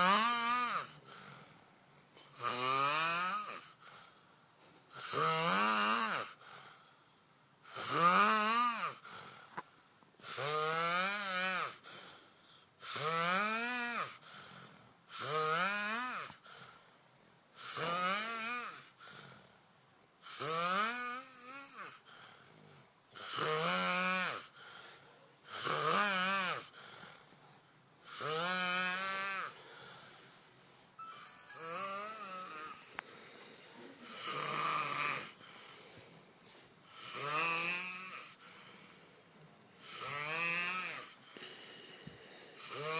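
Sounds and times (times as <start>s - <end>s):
man snoring: 0.0s - 1.1s, 2.3s - 3.8s, 5.0s - 6.4s, 7.7s - 9.0s, 10.2s - 11.8s, 12.8s - 14.2s, 15.1s - 16.4s, 17.6s - 19.0s, 20.3s - 22.0s, 23.2s - 24.5s, 25.5s - 26.8s, 28.0s - 29.6s, 31.2s - 33.0s, 34.0s - 35.4s, 36.9s - 38.5s, 39.8s - 42.9s
quiet breathing: 0.9s - 2.4s, 3.6s - 5.0s, 6.3s - 7.6s, 9.0s - 10.0s, 11.8s - 12.8s, 14.2s - 15.1s, 16.4s - 17.6s, 18.8s - 20.2s, 22.0s - 23.2s, 24.5s - 25.5s, 26.6s - 28.1s, 29.5s - 40.2s, 40.9s - 42.9s.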